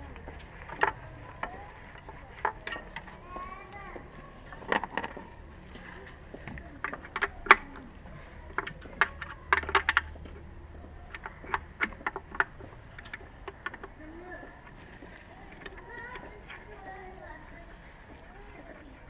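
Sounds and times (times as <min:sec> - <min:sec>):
metallic clinks of hand tools: 0:02.6 - 0:03.0.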